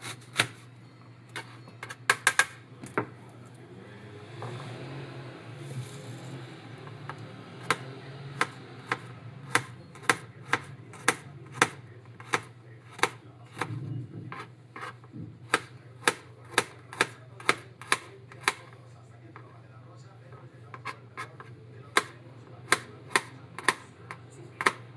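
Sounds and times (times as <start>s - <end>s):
knife chopping on cutting board: 0.0s - 0.6s, 6.8s - 18.8s, 20.7s - 24.9s.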